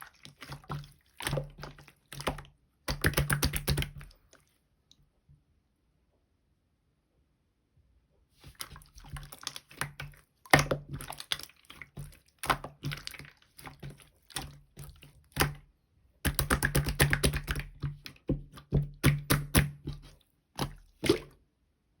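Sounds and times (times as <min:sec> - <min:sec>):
slime squished by hand: 0:00.0 - 0:04.5, 0:08.4 - 0:21.4.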